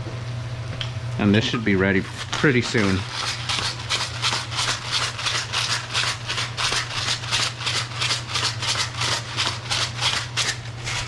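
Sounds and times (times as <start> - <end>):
steady low hum: 0.0 - 11.0
pepper grinder rasping: 1.8 - 11.0.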